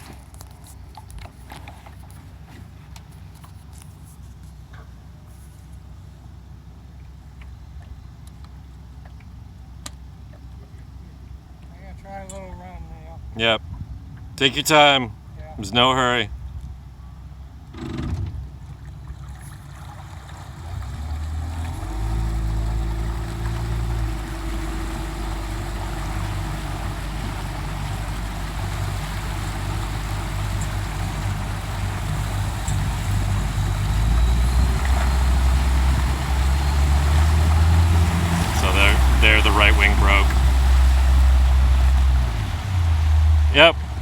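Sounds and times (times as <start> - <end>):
boat motor running: 17.0 - 44.0
rushing water: 18.6 - 44.0.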